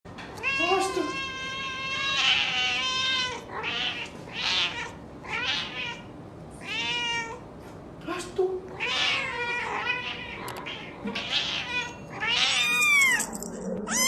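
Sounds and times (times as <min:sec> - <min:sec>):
cat meowing: 0:00.4 - 0:07.4, 0:08.8 - 0:14.0.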